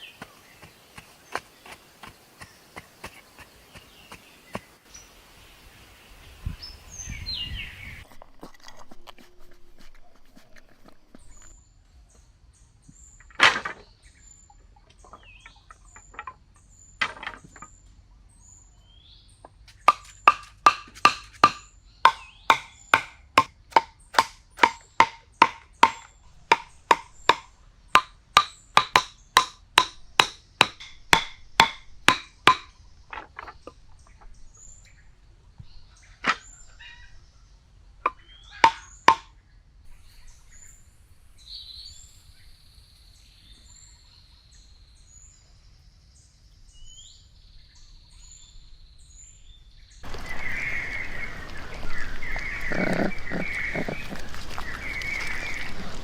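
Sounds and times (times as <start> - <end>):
sharp ringing knocks: 19.9 - 32.8, 38.1 - 39.3.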